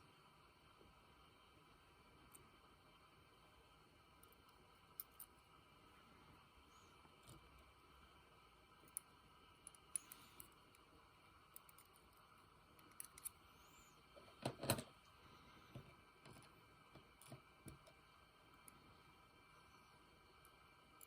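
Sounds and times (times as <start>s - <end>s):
small metal parts clicking: 4.2s - 5.3s, 8.9s - 10.8s, 11.5s - 13.4s, 16.2s - 17.9s.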